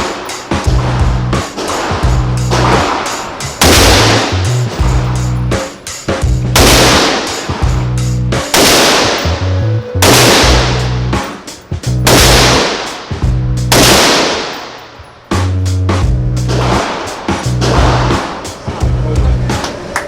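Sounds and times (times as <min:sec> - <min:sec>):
crashing hits: 0:00.0 - 0:09.4
music with heavy beat: 0:00.0 - 0:14.6, 0:15.3 - 0:20.0
stepping bass line: 0:00.6 - 0:12.6, 0:13.2 - 0:14.1, 0:15.4 - 0:16.8, 0:17.5 - 0:18.2.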